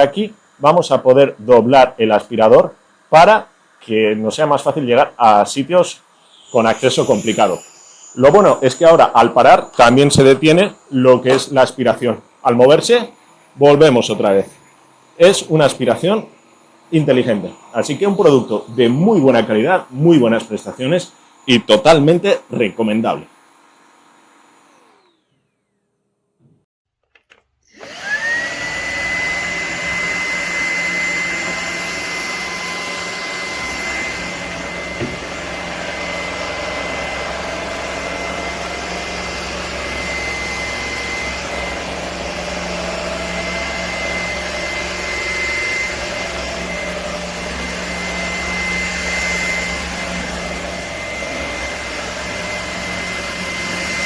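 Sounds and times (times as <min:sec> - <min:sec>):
vacuum motor whine: 0:06.1 - 0:11.6, 0:14.6 - 0:19.9, 0:23.3 - 0:26.1, 0:27.1 - 0:54.0.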